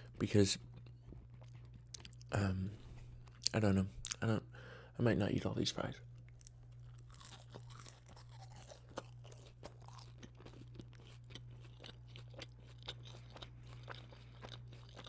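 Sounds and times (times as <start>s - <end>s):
chewing crunchy food: 0.6s - 2.4s, 6.2s - 15.0s.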